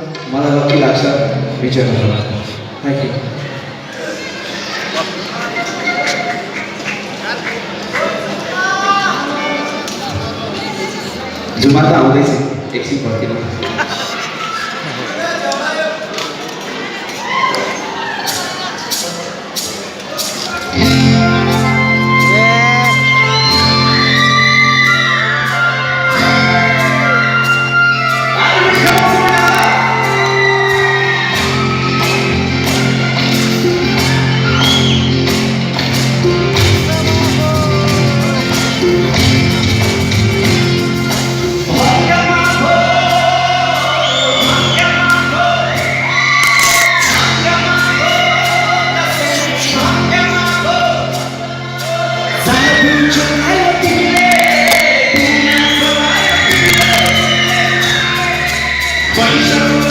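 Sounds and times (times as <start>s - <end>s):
live band through pa: 0.0s - 59.9s
audience shouting and whooping: 16.9s - 18.8s, 20.5s - 35.5s, 41.7s - 59.9s
person singing: 20.7s - 32.3s, 36.3s - 59.9s.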